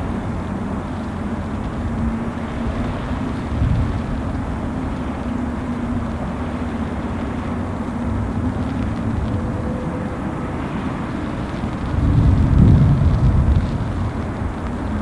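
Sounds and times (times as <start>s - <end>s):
heavy rain hiss: 0.0s - 15.0s
ship machinery drone: 0.0s - 15.0s.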